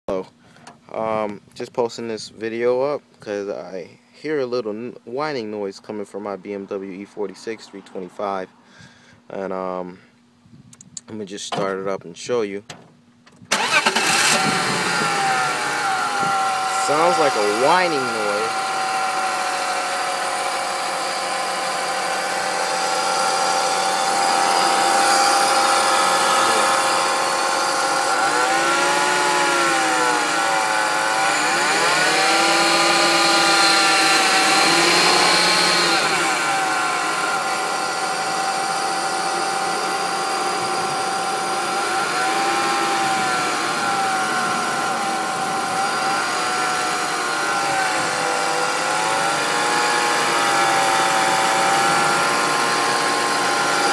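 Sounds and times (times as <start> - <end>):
steady whine: 13.3 - 53.9
car engine idling: 13.5 - 53.9.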